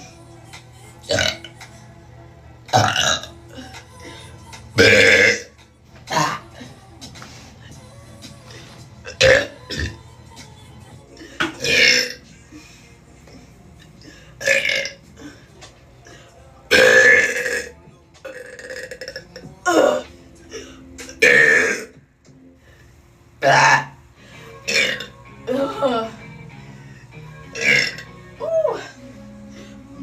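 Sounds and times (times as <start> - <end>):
woman burping: 1.1 - 1.4, 2.8 - 3.7, 4.8 - 5.5, 6.1 - 6.4, 9.1 - 10.0, 11.4 - 12.3, 14.4 - 15.3, 16.7 - 20.1, 21.0 - 21.9, 23.4 - 24.0, 24.7 - 26.2, 27.5 - 28.9.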